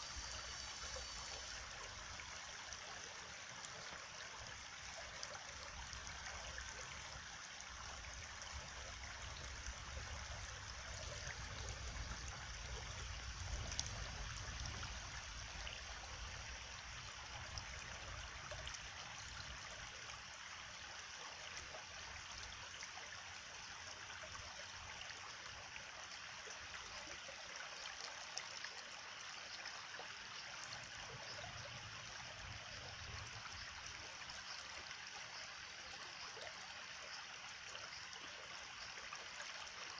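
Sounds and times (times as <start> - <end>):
stream babbling: 0.0 - 39.9
faint low rumble: 8.0 - 18.8.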